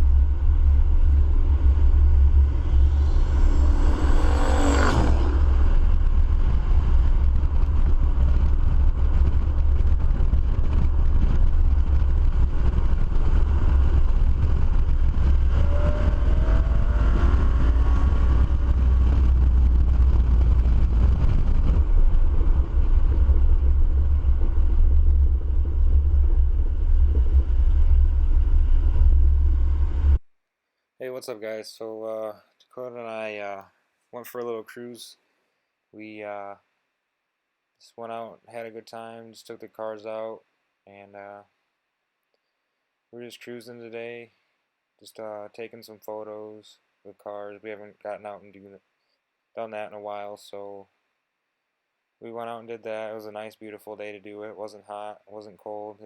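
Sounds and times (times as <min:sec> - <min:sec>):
rising whine: 0:00.0 - 0:30.2
vehicle engine rumble: 0:00.0 - 0:30.2.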